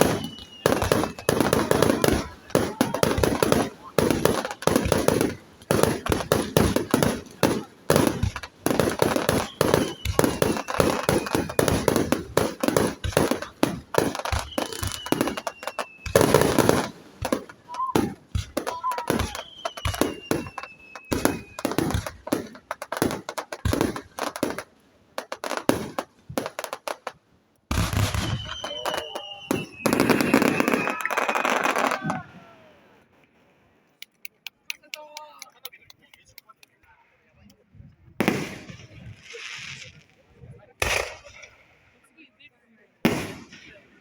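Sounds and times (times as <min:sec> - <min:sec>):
firework whistles sliding down: 0:00.0 - 0:01.8, 0:09.2 - 0:11.9, 0:14.3 - 0:16.4, 0:19.1 - 0:21.8, 0:27.8 - 0:32.0
fireworks bangs and crackling: 0:00.0 - 0:32.3, 0:38.2 - 0:41.8, 0:43.0 - 0:44.0.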